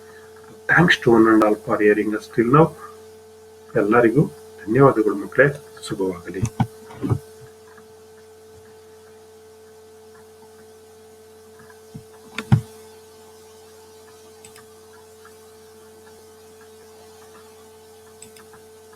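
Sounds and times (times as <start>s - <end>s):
steady electrical hum: 0.0s - 18.9s
short knocks: 6.4s - 7.3s, 12.0s - 12.7s.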